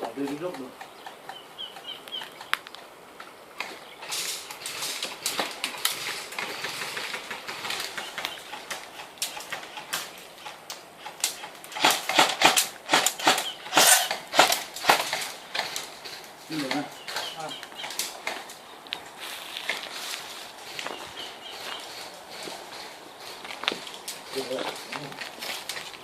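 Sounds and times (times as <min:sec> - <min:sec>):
dry leaves rustling and crackling: 0:04.0 - 0:26.0.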